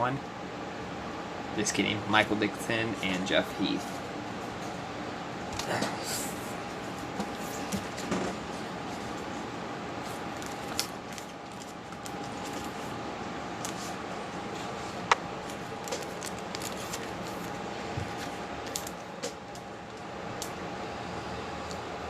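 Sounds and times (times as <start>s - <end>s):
faint hum: 0.0s - 22.0s
cards clicking and rustling: 10.1s - 12.8s, 15.1s - 20.1s.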